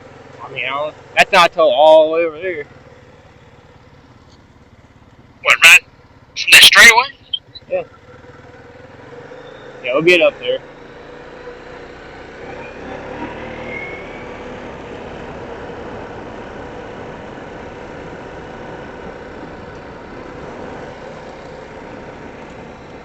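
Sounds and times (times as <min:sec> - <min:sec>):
atv engine running: 0:00.0 - 0:23.0.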